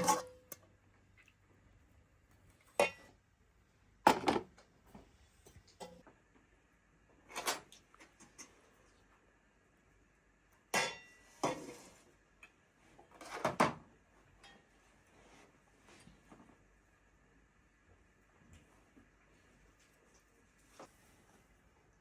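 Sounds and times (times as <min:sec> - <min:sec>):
kitchenware clinking and clattering: 0:00.0 - 0:00.6, 0:04.1 - 0:04.6, 0:07.3 - 0:08.5, 0:10.8 - 0:12.0.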